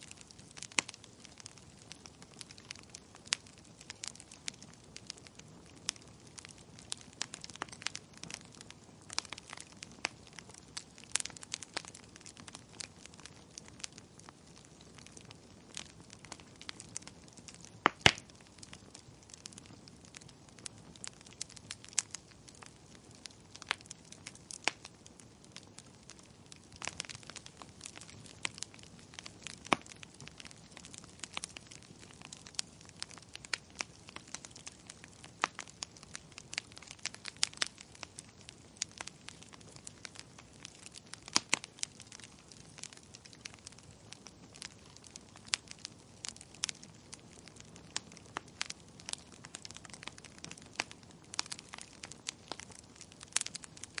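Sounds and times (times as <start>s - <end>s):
wood fire crackling and popping: 0.0s - 54.0s.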